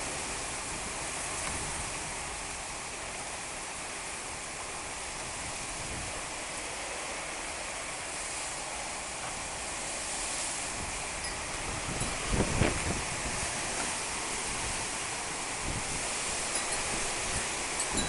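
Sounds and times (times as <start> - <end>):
wind buffeting microphone: 0.0 - 2.6, 4.9 - 6.4, 10.6 - 18.0
heavy rain pouring: 0.0 - 18.0.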